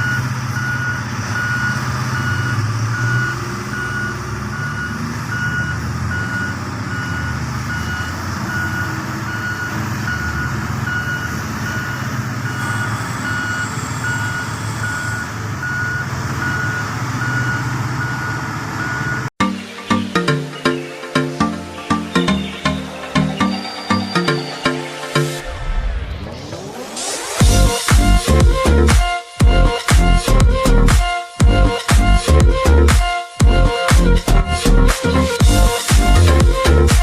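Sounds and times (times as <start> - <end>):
reversing alarm beeping: 0.0 - 19.3, 22.1 - 28.9
diesel engine rumbling: 0.0 - 37.0.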